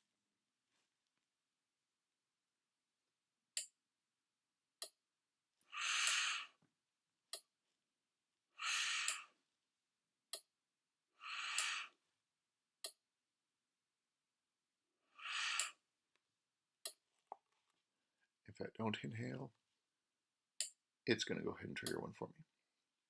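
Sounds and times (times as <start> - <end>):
sharp breaths through mask: 5.7 - 6.6, 8.6 - 9.4, 11.2 - 12.0, 15.1 - 15.8.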